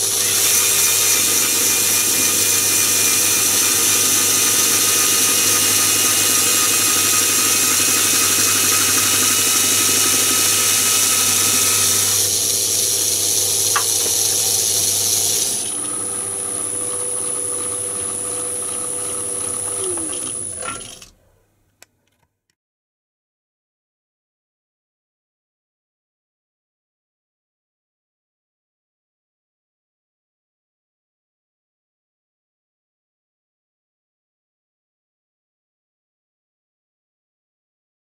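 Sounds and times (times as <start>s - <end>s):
high-pitched cutting noise: 0.0s - 15.8s
lathe running: 0.0s - 21.2s.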